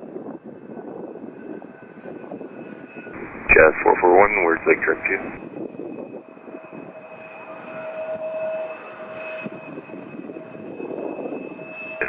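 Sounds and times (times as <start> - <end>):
faint steady tones: 3.2 - 5.4
radio channel hiss: 3.2 - 5.4.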